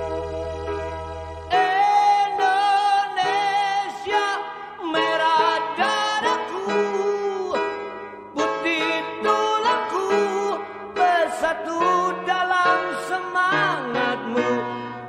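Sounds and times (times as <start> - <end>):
melody with vibrato: 0.0 - 4.2
keyboard chord over bass: 0.0 - 15.0.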